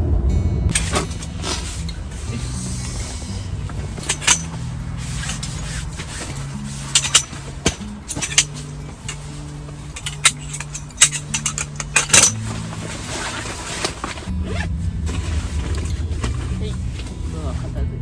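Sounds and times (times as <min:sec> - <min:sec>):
soft background music: 0:00.1 - 0:18.0
metal gear clinking and knocking: 0:00.7 - 0:14.3.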